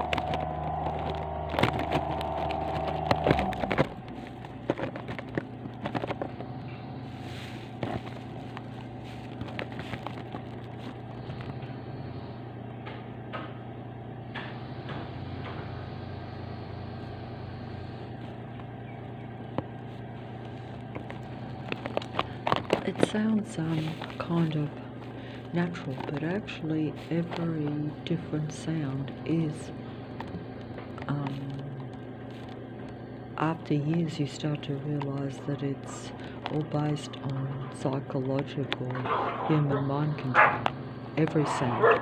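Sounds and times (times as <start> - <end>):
faint clicks and knocks: 0.0 - 6.9, 7.7 - 11.8, 18.0 - 29.3, 33.9 - 39.4
faint low hum: 0.0 - 42.0
mechanical droning hum: 0.0 - 42.0.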